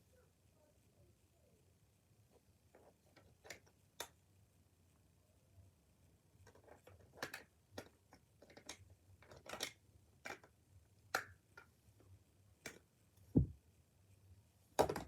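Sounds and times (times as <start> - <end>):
plastic parts clicking: 6.5 - 10.5
dull thump: 13.4 - 13.6.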